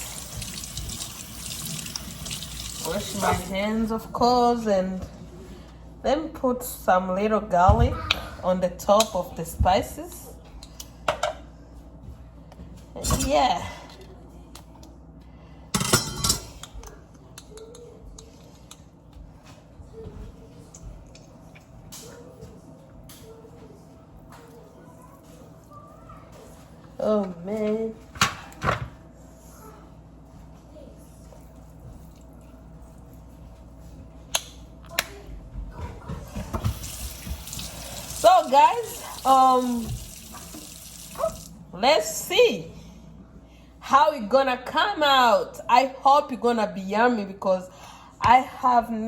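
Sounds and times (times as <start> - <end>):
kitchen tap running: 0.0 - 3.6, 36.4 - 41.6
clatter of dishes: 15.7 - 17.0.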